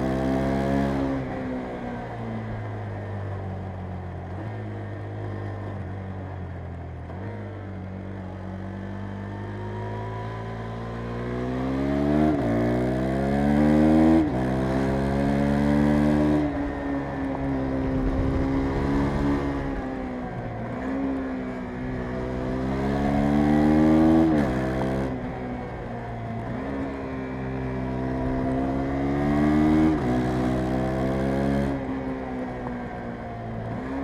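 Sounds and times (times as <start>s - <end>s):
motorcycle engine revving: 9.2s - 34.0s.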